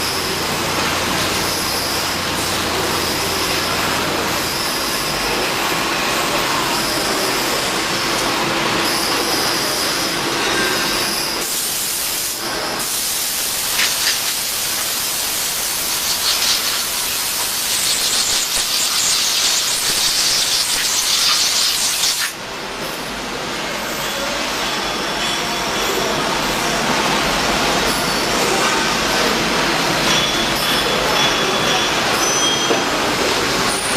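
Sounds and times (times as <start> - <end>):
milling machine hissing: 0.0 - 22.4.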